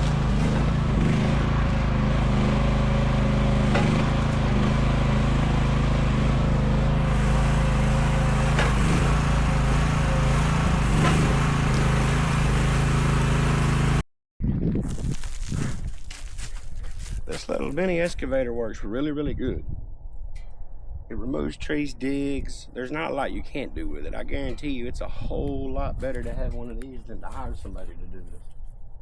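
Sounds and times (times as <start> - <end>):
excavator engine running: 0.0 - 14.0.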